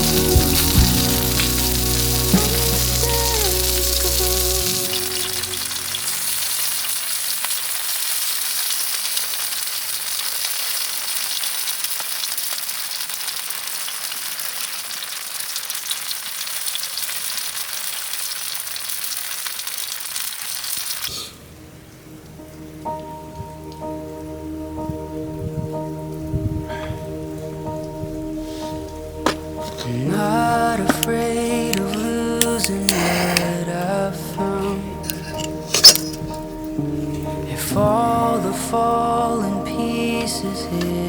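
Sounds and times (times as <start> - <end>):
background music: 0.0 - 7.2, 21.4 - 41.0
meat sizzling on a grill: 0.0 - 21.3, 32.0 - 33.8.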